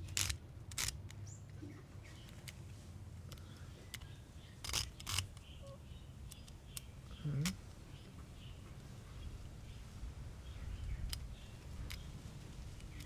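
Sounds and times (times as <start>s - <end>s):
lens clicking: 0.0s - 1.1s, 3.3s - 5.5s
faint bird chirps: 3.4s - 12.2s.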